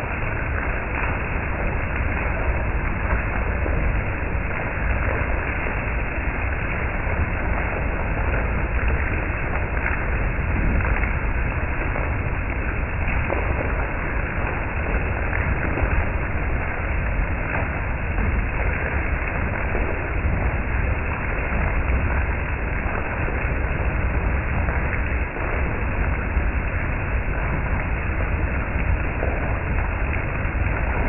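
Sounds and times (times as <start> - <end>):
wind buffeting microphone: 0.0 - 31.0.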